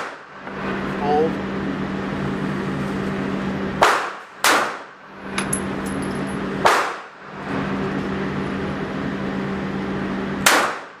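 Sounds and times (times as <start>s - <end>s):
steady background hum: 0.0s - 11.0s
handgun shots: 3.8s - 4.9s, 6.6s - 7.0s, 10.4s - 11.0s.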